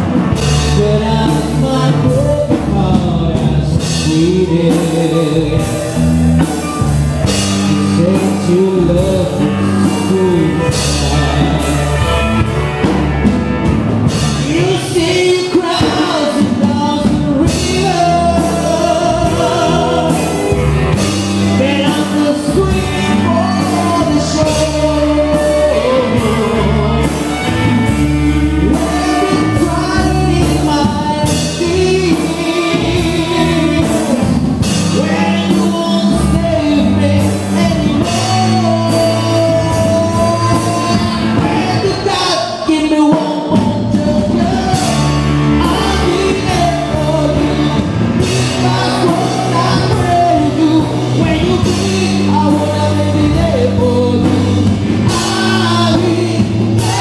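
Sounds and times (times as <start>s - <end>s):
band playing a song: 0.0s - 57.0s
lead vocal singing: 0.0s - 57.0s.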